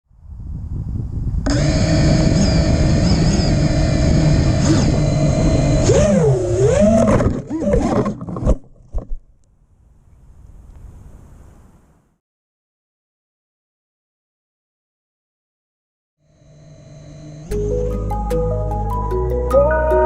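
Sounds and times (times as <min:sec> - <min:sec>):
quadcopter motors whining: 0:01.4 - 0:08.1, 0:16.3 - 0:18.2.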